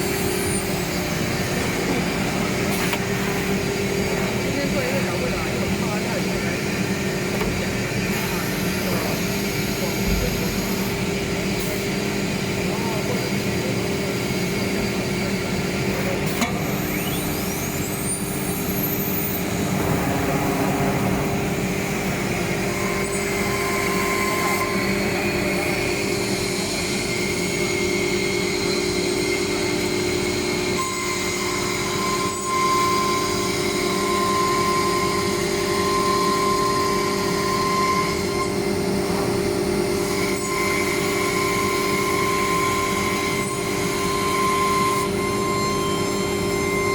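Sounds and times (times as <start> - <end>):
cnc router humming: 0.0 - 46.9
high spindle whine: 12.2 - 39.2.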